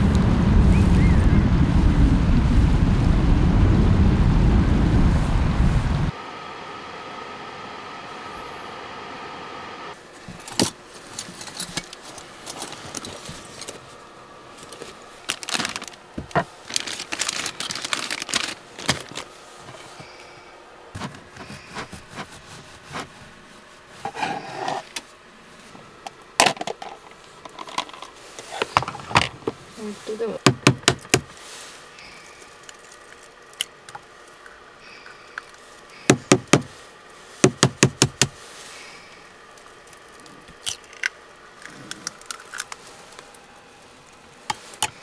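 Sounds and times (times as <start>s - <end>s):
steady hum: 0.0s - 45.0s
small hard objects rattling: 14.6s - 19.3s.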